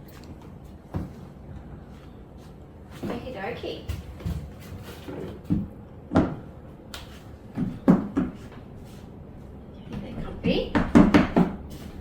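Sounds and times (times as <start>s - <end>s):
high-heel shoes knocking and clicking: 7.6s - 8.5s, 10.7s - 11.6s.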